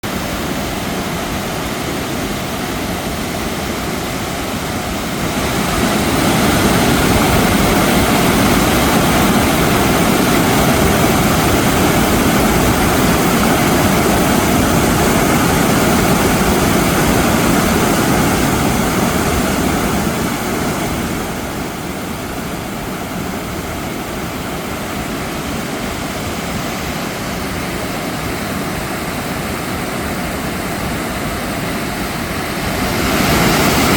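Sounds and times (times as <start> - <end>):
mountain stream rushing over rocks: 0.0 - 33.9.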